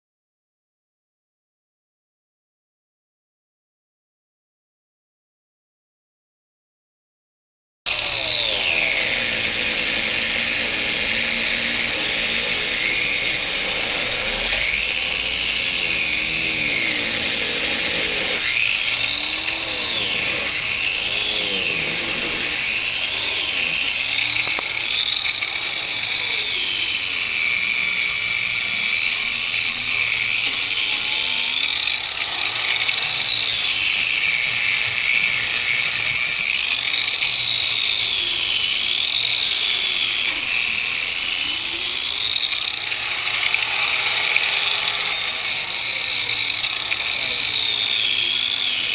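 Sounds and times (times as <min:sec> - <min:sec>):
power tool whining: 0:07.9 - 0:48.9.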